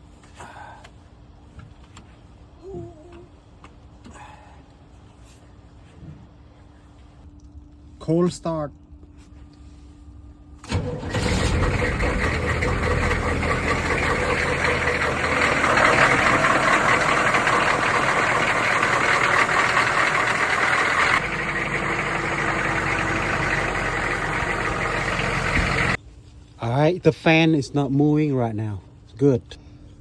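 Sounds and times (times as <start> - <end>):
diesel engine starting and idling: 10.6 - 26.0.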